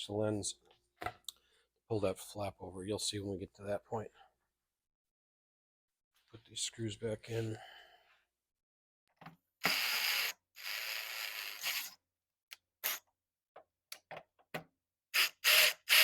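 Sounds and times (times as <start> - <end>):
screwdriver ratcheting and grinding: 15.2 - 16.0.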